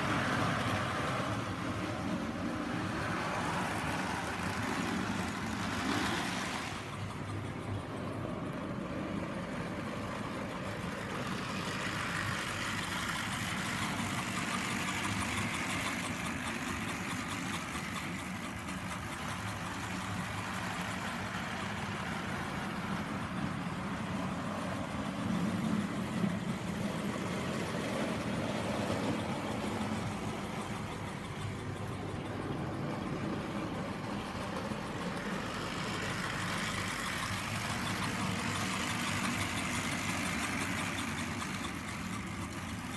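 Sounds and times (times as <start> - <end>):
model train motors humming: 0.0 - 42.9.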